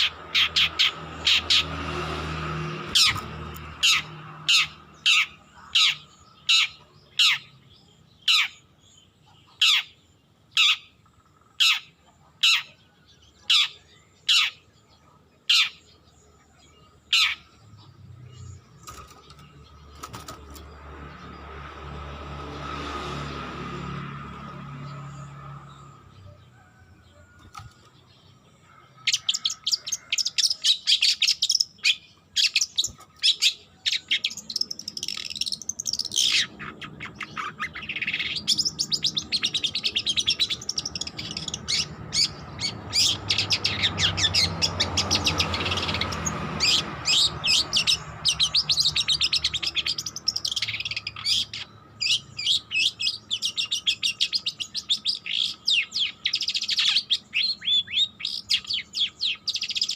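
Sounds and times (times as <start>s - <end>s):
bird singing scratchy chattering song: 0.0s - 22.0s, 24.2s - 59.9s.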